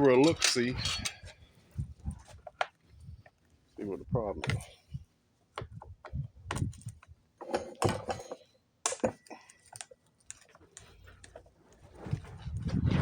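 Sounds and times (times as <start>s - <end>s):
tools and parts clicking: 0.0s - 1.4s.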